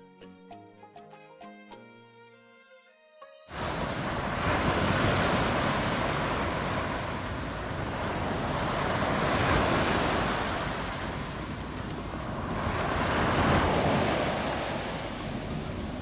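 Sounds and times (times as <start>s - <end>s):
sea surf rushing: 3.5s - 16.0s
wind buffeting microphone: 3.6s - 16.0s.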